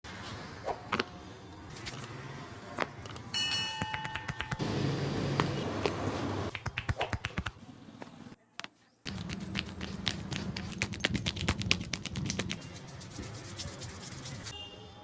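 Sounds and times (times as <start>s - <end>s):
hand slaps and taps on body: 3.8s - 4.6s, 6.5s - 7.6s.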